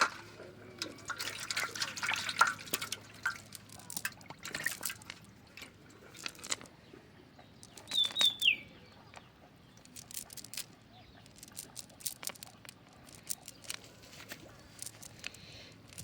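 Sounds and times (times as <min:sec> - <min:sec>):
water splashing and dripping: 0:00.0 - 0:06.6
high falling chirp: 0:07.6 - 0:08.8.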